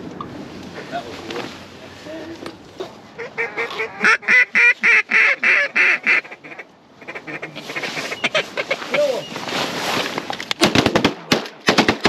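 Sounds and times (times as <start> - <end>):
duck call quacks: 3.2 - 9.3.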